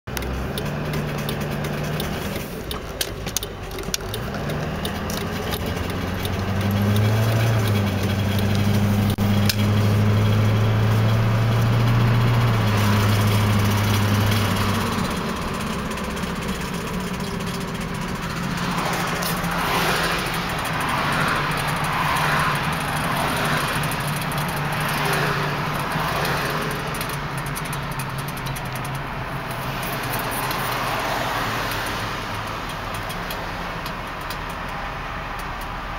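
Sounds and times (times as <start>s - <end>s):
sharp clicks: 0.1s - 9.7s
diesel engine running: 0.1s - 35.9s
rough noisy engine sound: 0.1s - 35.9s.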